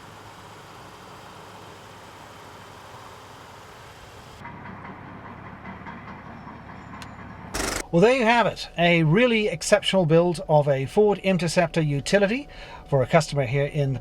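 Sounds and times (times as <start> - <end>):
vehicle engine idling: 0.0 - 7.9
faint steady tones: 7.0 - 8.5.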